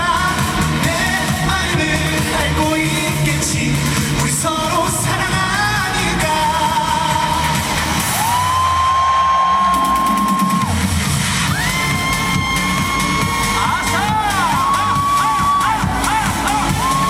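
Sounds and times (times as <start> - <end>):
man singing: 0.0 - 8.0, 13.5 - 17.0
band backing track: 0.0 - 17.0.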